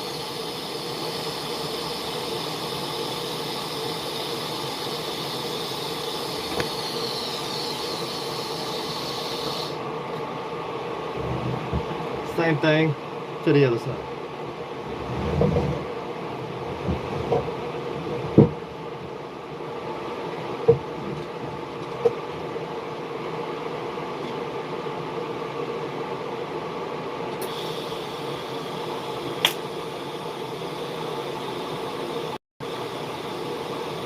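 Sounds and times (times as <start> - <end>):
high hiss: 0.0 - 9.9, 27.4 - 34.0
machine hum: 0.0 - 34.0.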